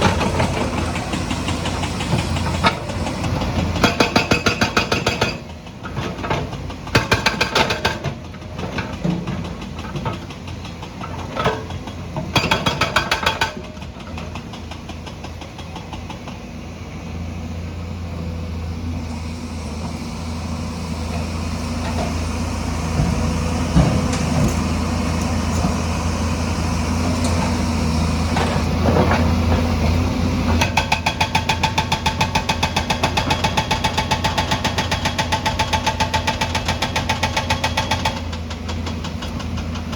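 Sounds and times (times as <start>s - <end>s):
diesel engine running: 0.0s - 7.3s, 13.6s - 35.4s
hydraulic breaker hammering: 30.6s - 39.9s.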